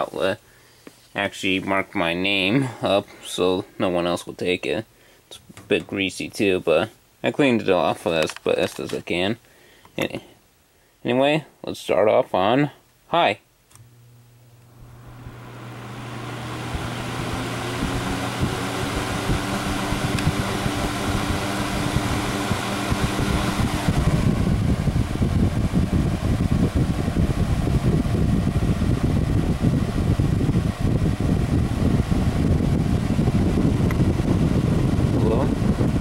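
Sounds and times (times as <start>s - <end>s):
box fan motor hum: 13.7s - 36.0s
fan air rushing: 13.7s - 36.0s.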